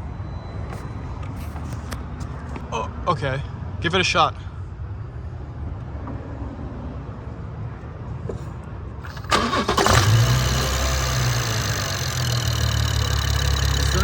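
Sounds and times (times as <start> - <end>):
car engine starting and idling: 9.0 - 14.0.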